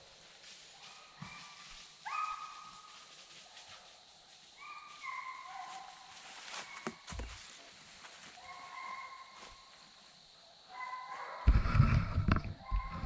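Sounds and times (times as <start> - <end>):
distant hounds baying: 0.8 - 4.0, 4.6 - 11.7, 12.6 - 13.0.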